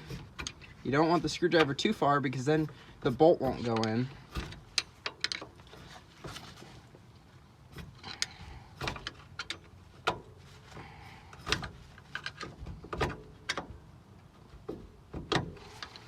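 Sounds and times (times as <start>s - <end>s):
screwdriver and bolt clinking on metal: 3.5s - 5.9s.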